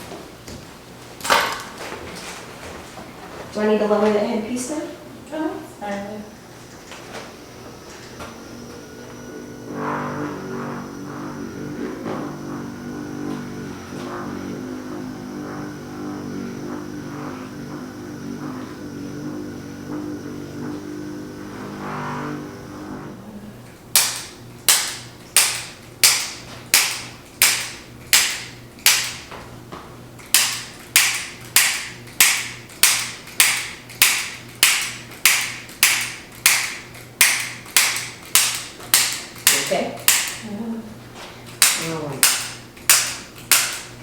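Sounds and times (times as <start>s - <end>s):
steady hum: 0.0s - 44.0s
sharp evenly spaced clicks: 23.9s - 29.2s, 30.2s - 40.4s, 41.5s - 43.9s.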